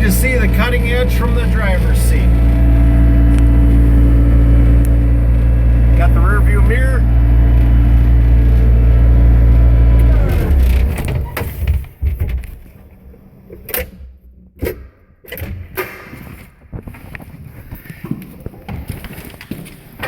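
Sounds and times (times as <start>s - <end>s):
diesel engine running: 0.0s - 13.2s.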